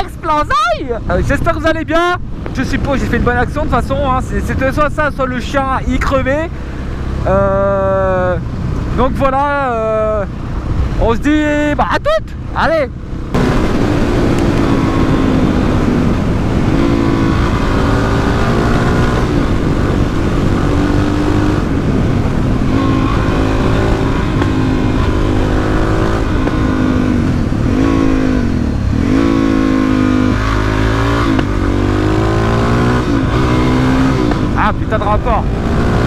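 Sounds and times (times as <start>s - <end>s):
motorcycle engine shifting gears: 13.0s - 36.0s.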